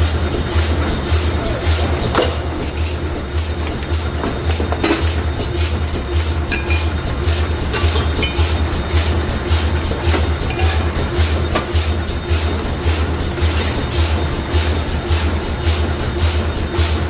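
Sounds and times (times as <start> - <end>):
forging machinery pulsing: 0.0 - 17.0
metallic clinks and knocks: 2.1 - 14.5.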